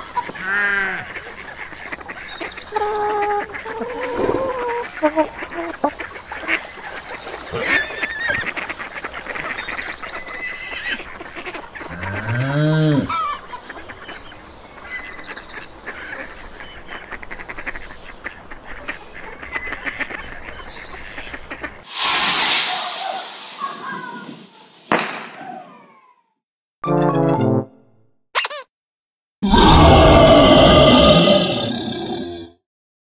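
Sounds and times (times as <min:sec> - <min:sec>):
loud rushing noise: 0:21.9 - 0:24.6.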